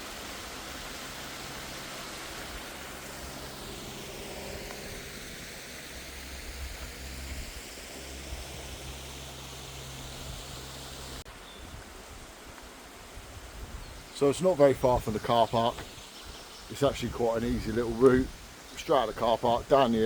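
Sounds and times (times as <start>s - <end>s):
waterfall rushing hiss: 0.0s - 11.2s.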